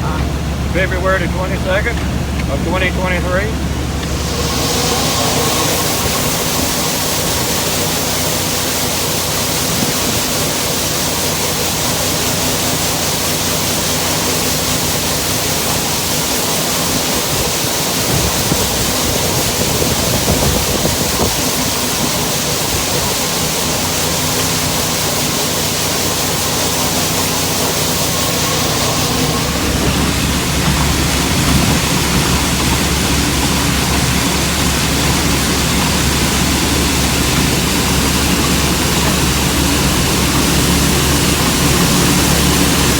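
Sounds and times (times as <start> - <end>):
harvester engine hum: 0.0 - 42.9
threshing machinery rushing: 3.6 - 42.9.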